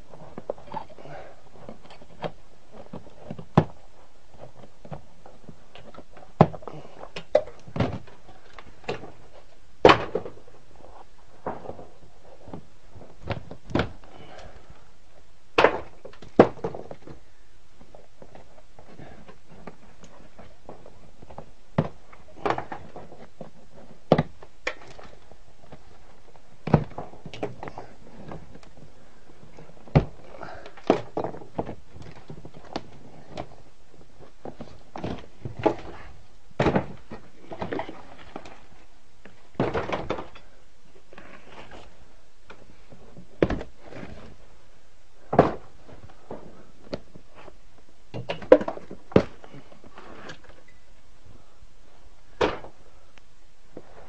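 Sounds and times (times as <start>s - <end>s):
knocks and thunks: 13.2s - 14.0s, 34.4s - 37.9s, 43.4s - 43.7s, 45.3s - 46.5s, 52.4s - 52.8s.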